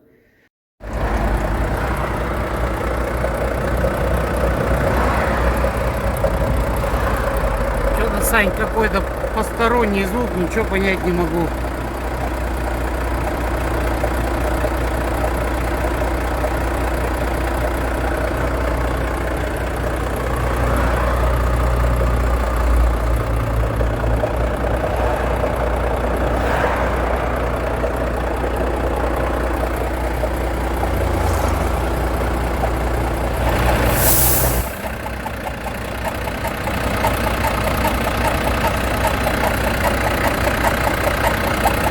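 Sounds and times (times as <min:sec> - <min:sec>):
diesel truck engine idling: 0:00.8 - 0:41.9
engine knocking and grinding: 0:00.8 - 0:41.9
air hiss: 0:33.8 - 0:34.8.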